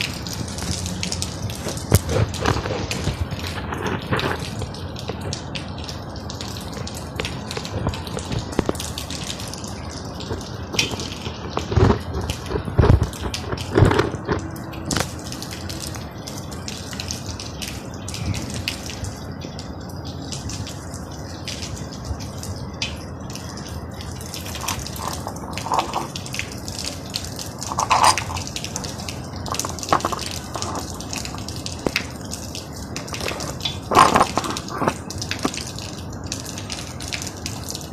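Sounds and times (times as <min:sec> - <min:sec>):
rain falling: 0:00.0 - 0:37.9
water drips and splashes: 0:00.0 - 0:37.9.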